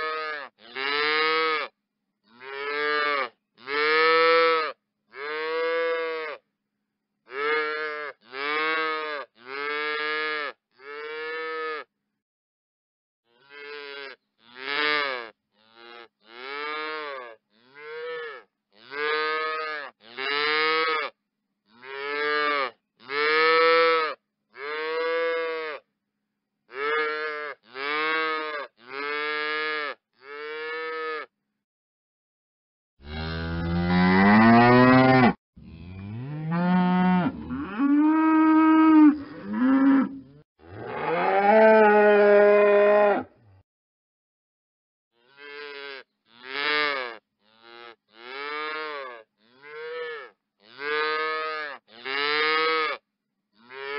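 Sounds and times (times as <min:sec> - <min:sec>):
long deep cattle moos: 0:33.0 - 0:43.6.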